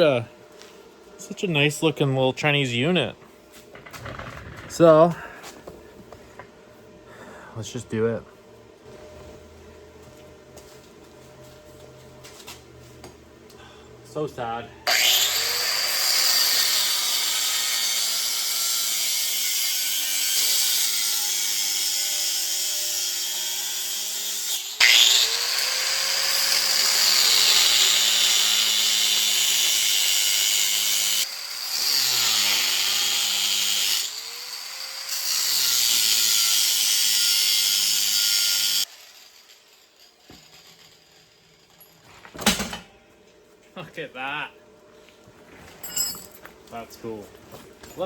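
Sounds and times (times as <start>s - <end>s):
angle grinder cutting metal: 14.9s - 41.9s.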